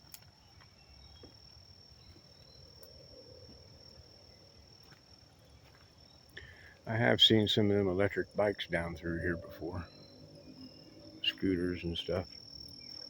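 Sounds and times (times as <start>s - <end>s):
faint ticks: 0.0s - 1.4s
crickets trilling: 0.0s - 13.0s.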